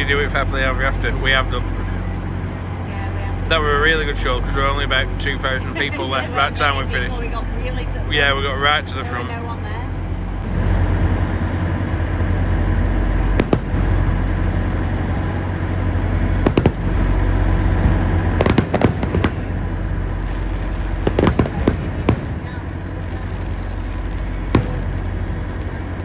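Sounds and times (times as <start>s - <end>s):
steady low rumble: 0.0s - 26.0s
fireworks bangs: 10.4s - 26.0s.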